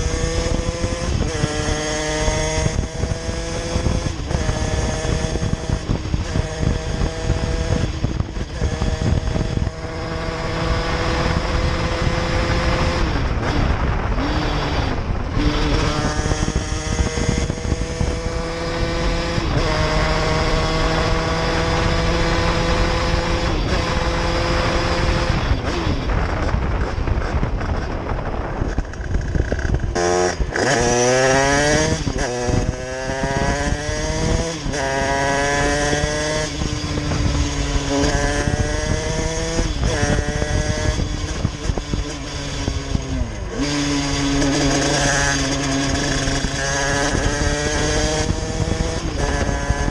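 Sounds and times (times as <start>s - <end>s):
moped two-stroke engine: 0.0s - 49.9s
wind noise on microphone: 0.0s - 49.9s.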